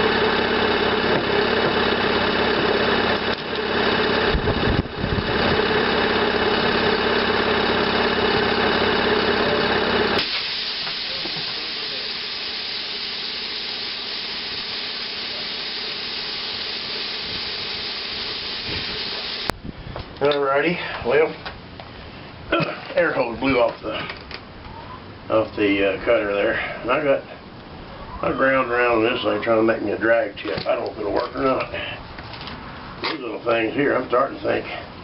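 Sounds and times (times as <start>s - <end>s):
compressed air hissing from hose: 10.2s - 19.5s.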